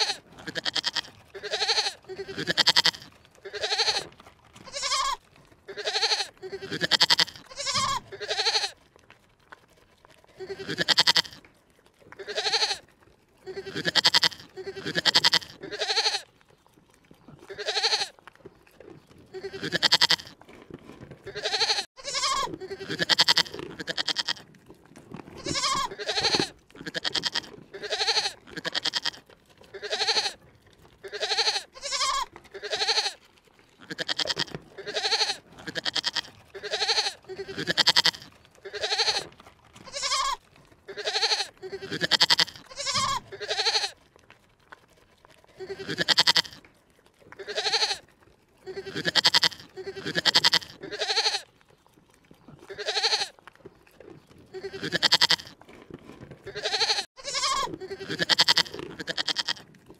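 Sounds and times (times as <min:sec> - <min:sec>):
livestock bleating: 0:00.0 - 0:08.8, 0:10.4 - 0:11.4, 0:12.1 - 0:16.3, 0:17.5 - 0:18.2, 0:19.3 - 0:20.4, 0:21.3 - 0:24.5, 0:25.4 - 0:30.4, 0:31.0 - 0:33.2, 0:33.8 - 0:44.0, 0:45.6 - 0:46.6, 0:47.3 - 0:51.5, 0:52.7 - 0:53.4, 0:54.5 - 0:55.6, 0:56.5 - 0:59.7.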